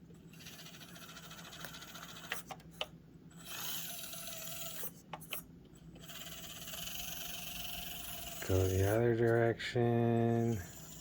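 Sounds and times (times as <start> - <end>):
small electric motor whirring: 0.3 - 2.5, 3.3 - 5.4, 6.0 - 9.1, 10.2 - 11.0.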